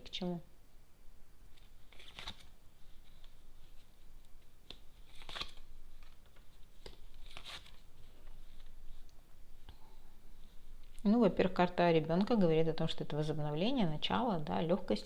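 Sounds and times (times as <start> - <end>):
cards rustling: 1.5 - 9.1.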